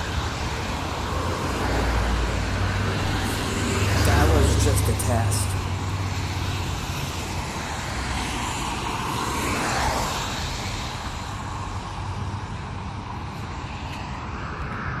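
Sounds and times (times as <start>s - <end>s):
distant warning sirens: 0.3s - 7.7s.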